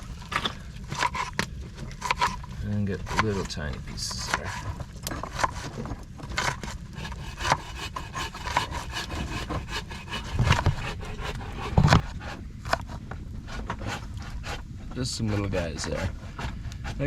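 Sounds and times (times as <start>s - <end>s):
knife chopping onion: 7.0s - 12.0s.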